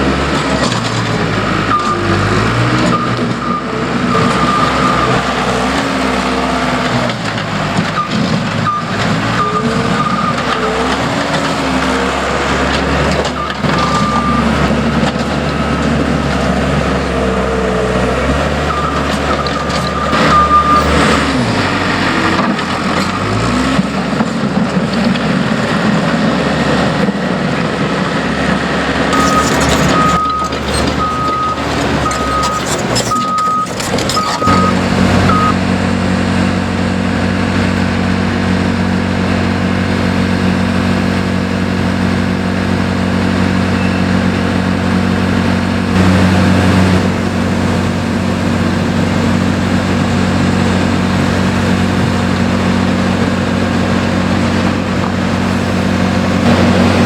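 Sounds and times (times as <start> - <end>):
heavy construction machines running: 0.0 - 57.0
reversing alarm beeping: 1.6 - 5.4, 13.3 - 17.1, 18.4 - 21.7, 29.2 - 35.6.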